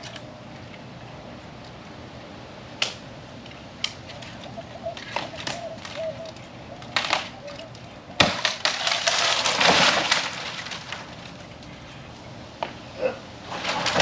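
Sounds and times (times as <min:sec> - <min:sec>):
dry wood snapping: 0:02.8 - 0:03.0, 0:04.9 - 0:11.8, 0:13.6 - 0:14.0
crackling and rustling: 0:02.8 - 0:12.8, 0:13.4 - 0:14.0.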